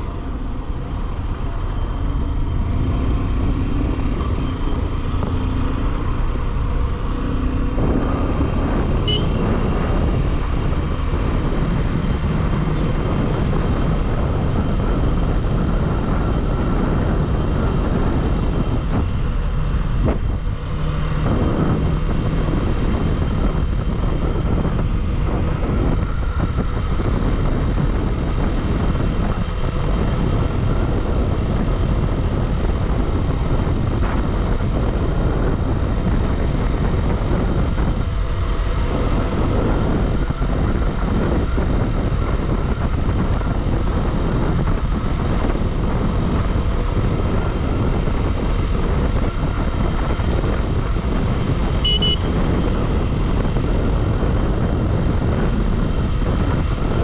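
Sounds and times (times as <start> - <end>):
motorcycle engine: 0.0 - 57.0
road noise: 0.0 - 57.0
wind rushing over microphone: 0.0 - 57.0
high beep: 51.8 - 52.3.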